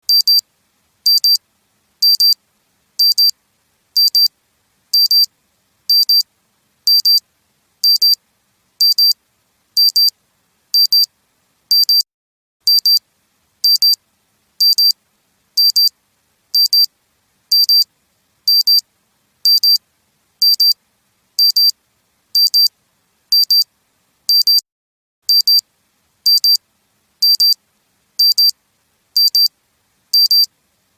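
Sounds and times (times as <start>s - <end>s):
wristwatch alarm beeping: 0.1s - 0.4s, 1.1s - 1.4s, 2.0s - 2.4s, 3.0s - 3.3s, 4.0s - 4.3s, 5.0s - 5.3s, 5.9s - 6.2s, 6.9s - 7.2s, 7.8s - 8.2s, 8.8s - 9.2s, 9.8s - 10.1s, 10.8s - 11.1s, 11.7s - 12.0s, 12.7s - 13.0s, 13.6s - 14.0s, 14.6s - 15.0s, 15.6s - 15.9s, 16.6s - 16.9s, 17.5s - 17.8s, 18.5s - 18.8s, 19.5s - 19.8s, 20.4s - 20.8s, 21.4s - 21.7s, 22.4s - 22.7s, 23.3s - 23.7s, 24.3s - 24.6s, 25.3s - 25.6s, 26.3s - 26.6s, 27.2s - 27.6s, 28.2s - 28.5s, 29.2s - 29.5s, 30.2s - 30.5s.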